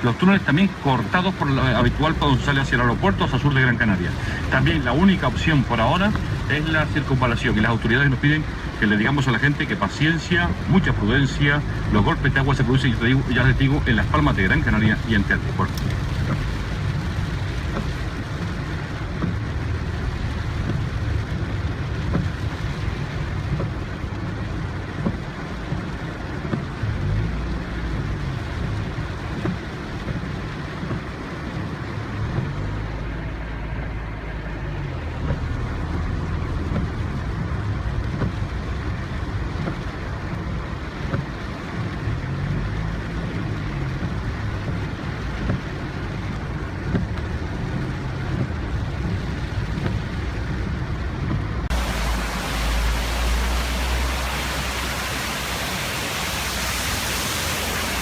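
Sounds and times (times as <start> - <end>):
road noise: 0.0 - 58.0
car engine: 41.7 - 58.0
loud steady hiss: 51.7 - 58.0.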